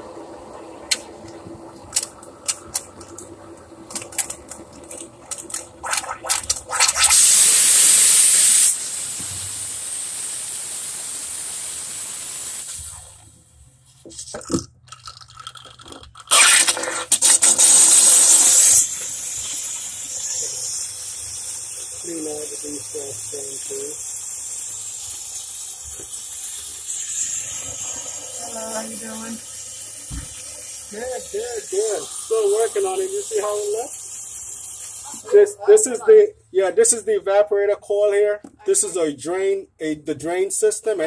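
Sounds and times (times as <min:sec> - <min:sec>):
loud hissing spray blasts: 0:05.3 - 0:13.4, 0:16.3 - 0:36.0.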